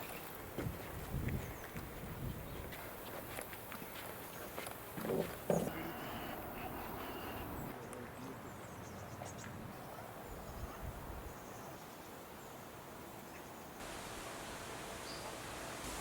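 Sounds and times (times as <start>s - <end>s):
steady hiss: 13.8s - 16.0s.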